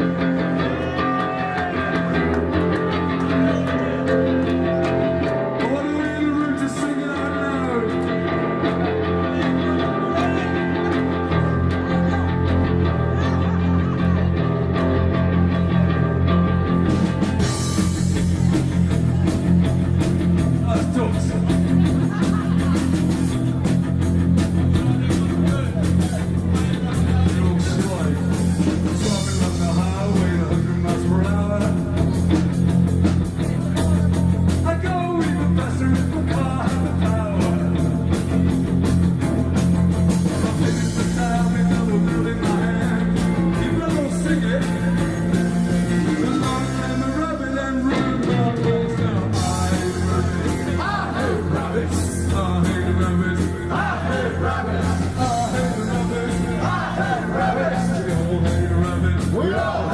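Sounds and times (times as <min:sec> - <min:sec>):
person singing: 0:00.0 - 0:14.3, 0:40.3 - 0:59.9
live rock band playing: 0:00.0 - 0:59.9
steady drum beat: 0:16.8 - 0:47.1, 0:48.0 - 0:59.9.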